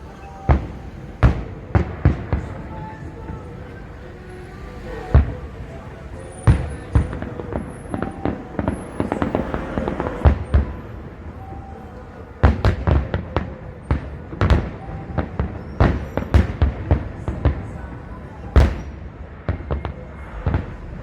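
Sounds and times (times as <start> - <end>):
fireworks booming: 0.0 - 4.0, 4.7 - 11.6, 18.5 - 21.0
fireworks crackling: 0.0 - 21.0.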